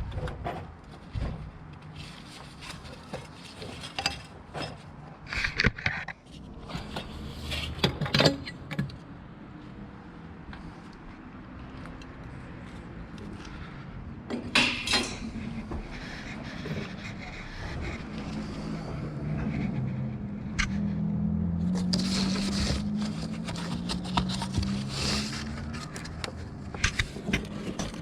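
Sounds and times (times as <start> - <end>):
metal tools clinking and scraping: 2.5 - 5.0, 14.4 - 15.6
steady low hum: 14.9 - 27.3.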